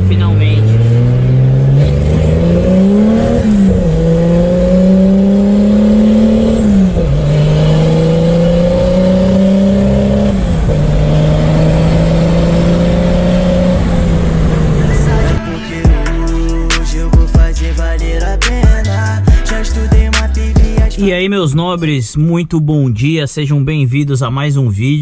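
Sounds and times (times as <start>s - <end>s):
car engine shifting gears: 0.0s - 15.5s.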